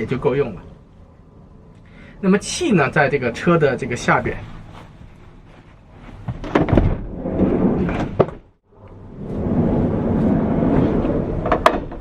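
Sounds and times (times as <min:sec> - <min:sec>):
rumbling handling noise: 0:02.8 - 0:12.0
thumps and knocks: 0:06.1 - 0:07.2
steady rushing noise: 0:08.7 - 0:12.0.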